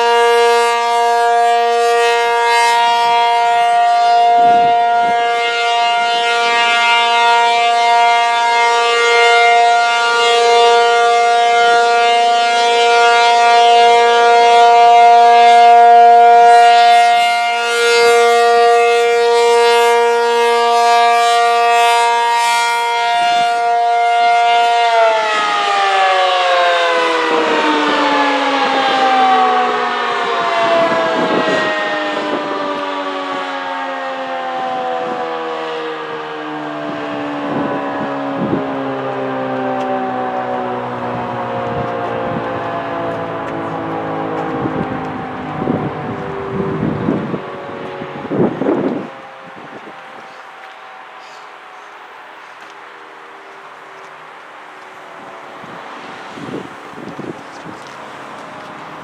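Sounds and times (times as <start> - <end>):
warning siren winding down: 0.0 - 59.0.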